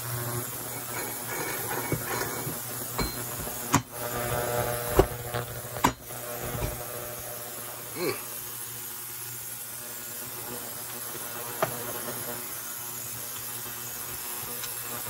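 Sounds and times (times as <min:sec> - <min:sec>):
steady low hum: 0:00.1 - 0:08.5.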